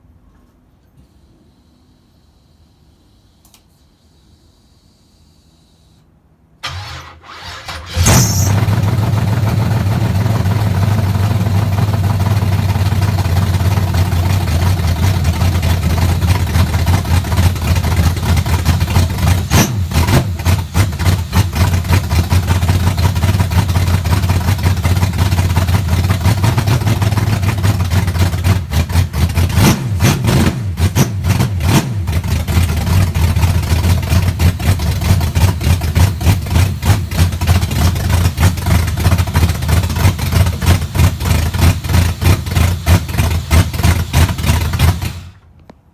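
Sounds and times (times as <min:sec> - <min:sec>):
car engine running unevenly: 0:07.7 - 0:30.0.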